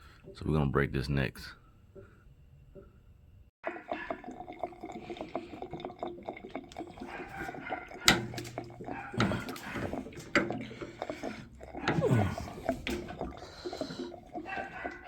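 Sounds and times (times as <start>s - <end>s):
tools clicking and scraping on pipes: 4.8s - 15.0s.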